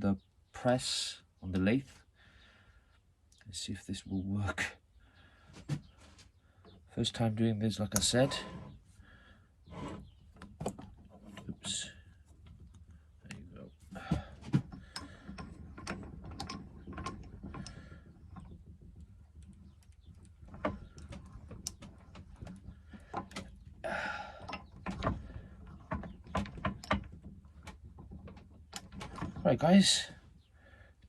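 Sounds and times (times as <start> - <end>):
scraping rasp: 8.0 - 8.8
clicks and knocks of parts pressed: 14.4 - 23.6, 24.4 - 29.4.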